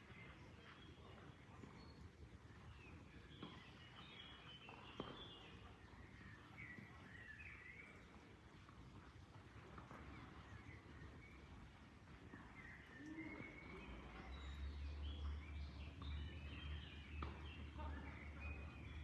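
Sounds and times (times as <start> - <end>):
faint bird chirps: 12.2 - 19.0.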